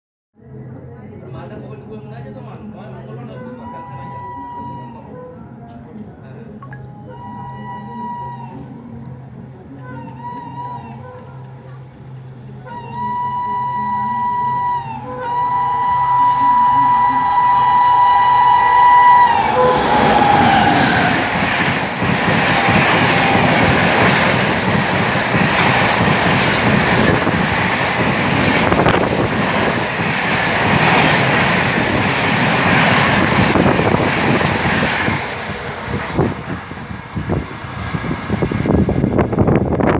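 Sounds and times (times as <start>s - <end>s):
locomotive horn: 12.6s - 35.2s
train coaches clattering over rails: 14.3s - 39.7s.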